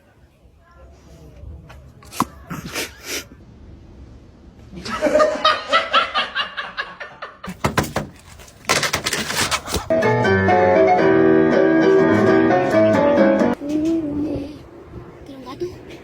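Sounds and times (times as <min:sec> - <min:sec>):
sharp knocks: 0:07.5 - 0:08.2.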